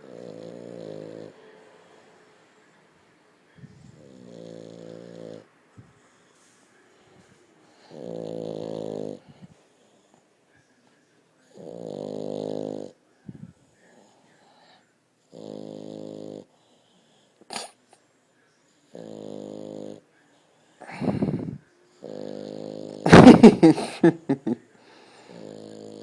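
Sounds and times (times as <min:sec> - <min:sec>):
dog snoring: 0:00.0 - 0:02.0, 0:03.7 - 0:05.5, 0:07.6 - 0:10.1, 0:11.4 - 0:13.0, 0:13.9 - 0:17.8, 0:18.8 - 0:20.1, 0:20.8 - 0:23.4, 0:25.0 - 0:26.0.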